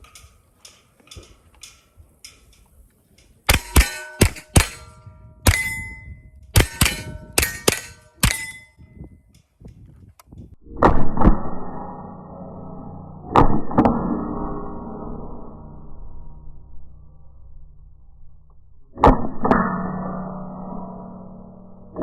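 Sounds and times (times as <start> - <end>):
rifle shots: 3.5 - 6.0, 6.6 - 8.6
steel target ringing clang: 3.5 - 9.0.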